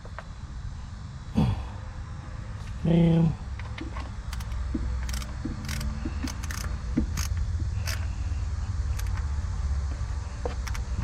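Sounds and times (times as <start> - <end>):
steady low rumble: 0.0 - 11.0
hand tools clicking and clinking: 4.3 - 8.1, 8.9 - 9.3.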